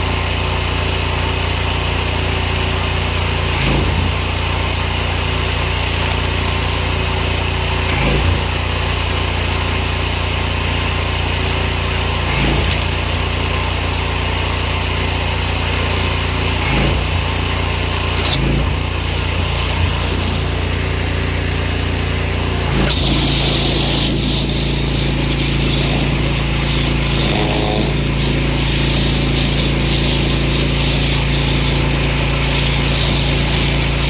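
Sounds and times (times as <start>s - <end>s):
pressure washer engine droning: 0.0s - 34.0s
hiss of water spray: 22.7s - 34.0s.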